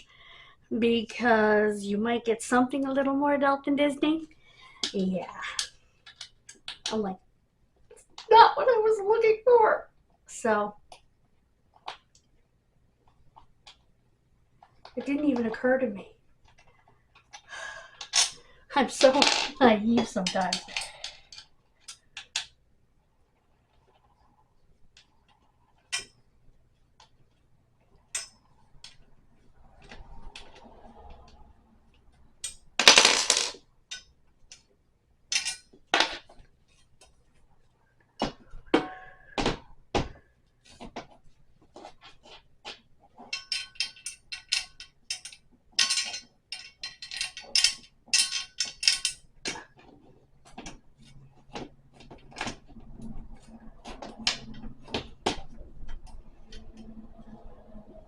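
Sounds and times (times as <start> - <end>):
clinks of metal fasteners and tools: 28.1 - 29.0, 35.3 - 36.3, 43.2 - 49.8.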